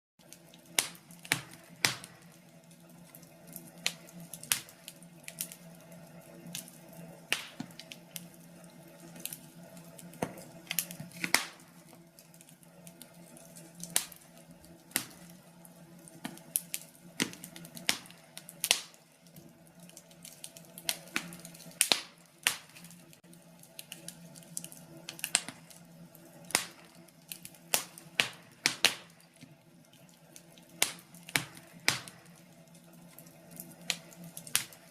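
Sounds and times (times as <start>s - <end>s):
wood fire crackling: 0.2s - 34.9s.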